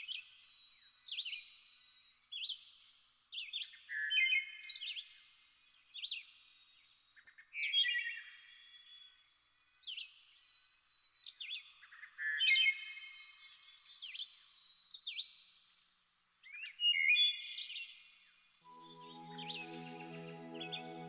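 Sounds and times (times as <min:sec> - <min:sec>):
songbirds chirping and singing: 0:18.7 - 0:21.0.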